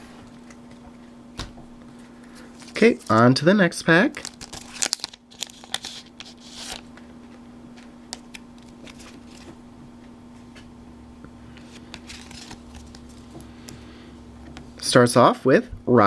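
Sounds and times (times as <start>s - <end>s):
card pack crinkling and rustling: 2.0s - 9.6s, 11.5s - 13.9s.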